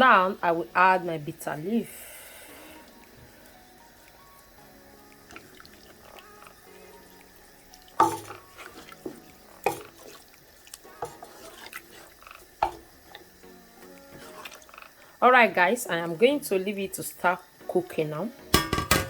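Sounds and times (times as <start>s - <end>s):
soup sloshing in a pot: 2.3s - 15.2s
utensil clanking against pot: 7.8s - 13.3s, 18.6s - 19.0s.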